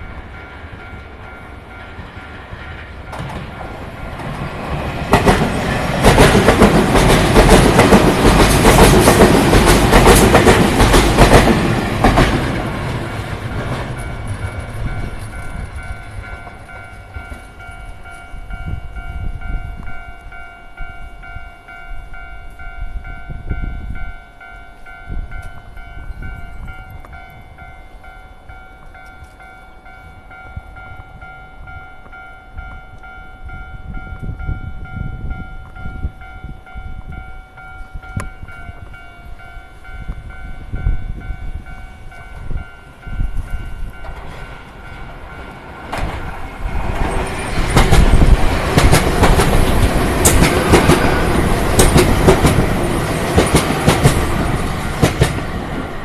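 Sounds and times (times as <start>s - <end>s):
train wheels clacking over rail joints: 1.8s - 17.4s, 45.5s - 55.9s
level crossing warning bell ringing: 13.4s - 45.7s.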